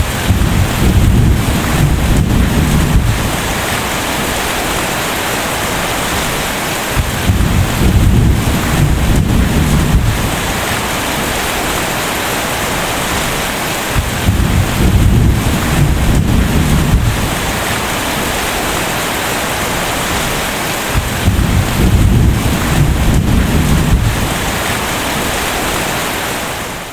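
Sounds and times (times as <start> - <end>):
thunder rumbles: 0.0 - 5.0, 7.0 - 11.4, 13.2 - 18.6, 20.9 - 25.4
steady rain: 0.0 - 26.9.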